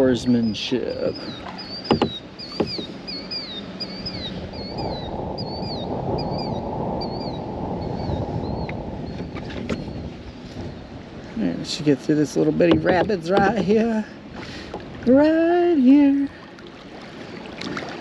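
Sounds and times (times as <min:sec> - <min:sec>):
kayak paddle splashes and knocks: 0:01.3 - 0:03.0, 0:12.5 - 0:15.1, 0:16.6 - 0:18.0.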